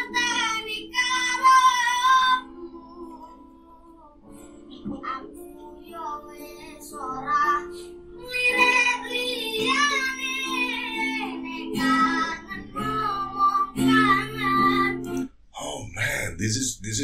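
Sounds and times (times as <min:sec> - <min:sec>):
boy singing in high voice: 0:00.0 - 0:04.2, 0:05.0 - 0:15.2
acoustic guitar strumming: 0:07.7 - 0:15.4.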